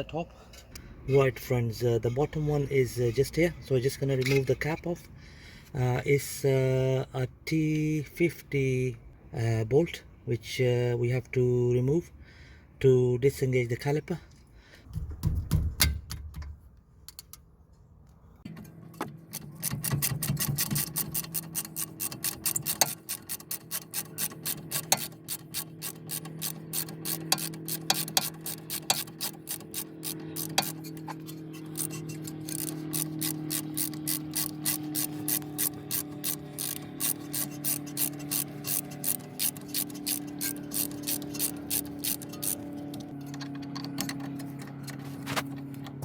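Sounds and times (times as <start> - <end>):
ratchet wrench clicking: 19.3 - 44.3.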